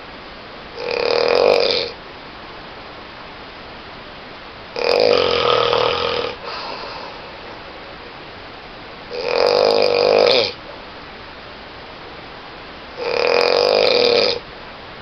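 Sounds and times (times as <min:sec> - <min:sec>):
steady background hiss: 0:00.0 - 0:15.0
person snoring loudly: 0:00.8 - 0:02.0, 0:04.8 - 0:07.4, 0:09.1 - 0:10.6, 0:13.0 - 0:14.4.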